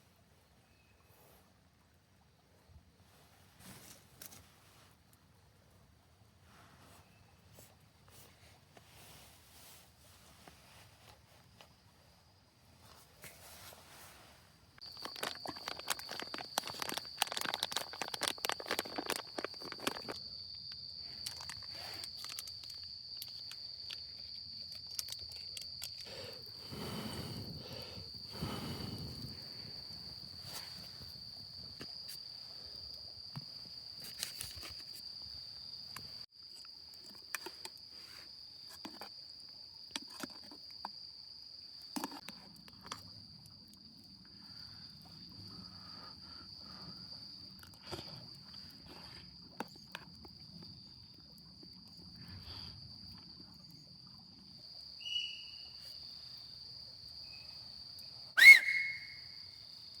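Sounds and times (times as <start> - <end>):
insect trilling: 14.8 - 32.0, 54.9 - 56.1, 58.3 - 60.0
sharp falling call: 58.4 - 59.2.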